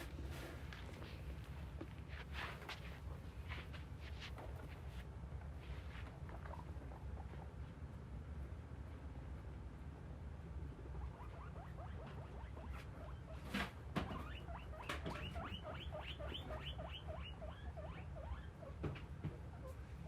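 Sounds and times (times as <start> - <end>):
rodent squeaking: 6.0 - 7.6, 10.7 - 20.0.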